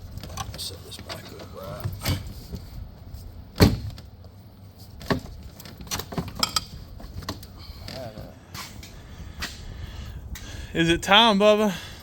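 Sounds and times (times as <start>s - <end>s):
loud thump: 3.6s - 4.0s
tools clunking and clicking: 5.0s - 8.0s.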